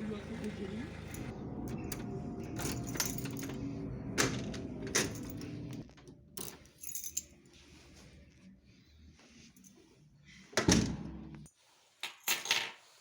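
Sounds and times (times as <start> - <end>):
background hum: 0.0 - 11.5
metallic clicks and jingles: 1.1 - 7.4.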